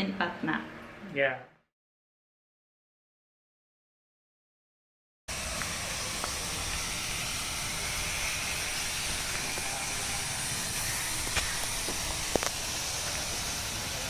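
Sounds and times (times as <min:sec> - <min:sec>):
steady hissing noise: 0:05.3 - 0:14.0.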